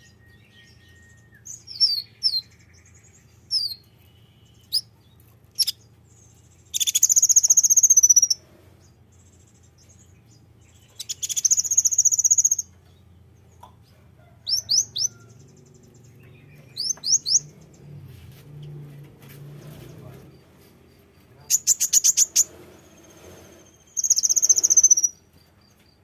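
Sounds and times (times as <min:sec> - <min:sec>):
songbird trilling and whistling: 0:00.0 - 0:08.4, 0:09.2 - 0:12.8, 0:14.4 - 0:17.6, 0:21.4 - 0:25.3.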